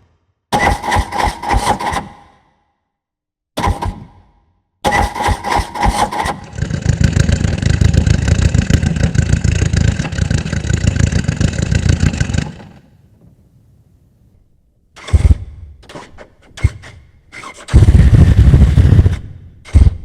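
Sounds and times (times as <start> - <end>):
car starter cranking: 4.9 - 12.8, 15.0 - 19.9
car engine running: 7.0 - 12.8.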